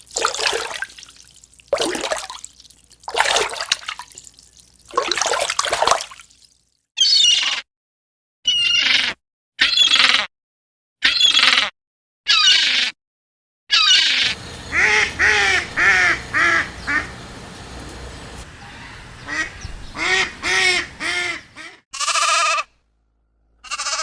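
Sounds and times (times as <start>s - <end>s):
duck quacking: 14.2s - 22.6s.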